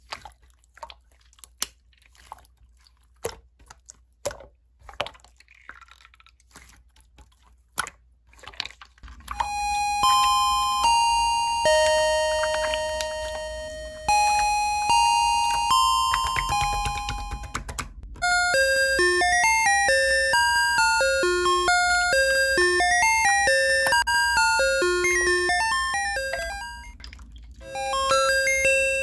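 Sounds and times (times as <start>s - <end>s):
electronic school bell chime: 9.3s - 17.6s, 18.2s - 27.0s, 27.6s - 29.0s.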